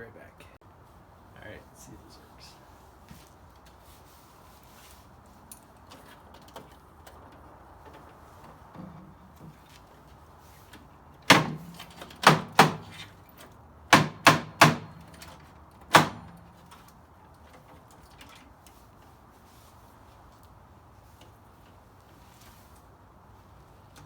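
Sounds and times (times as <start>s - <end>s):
hammer blows on wood cabinet: 11.3s - 13.0s, 13.9s - 15.0s, 15.9s - 16.4s.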